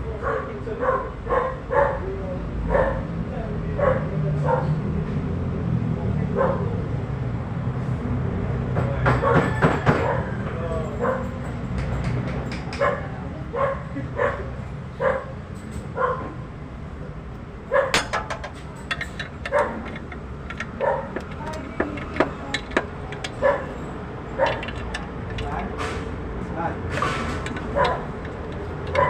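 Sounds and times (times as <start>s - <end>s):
dog barking: 0.2s - 2.0s, 2.7s - 3.1s, 3.8s - 4.8s, 6.4s - 6.7s, 9.2s - 10.2s, 11.0s - 11.4s, 12.8s - 16.4s, 17.7s - 18.0s, 20.8s - 21.2s, 23.4s - 23.7s.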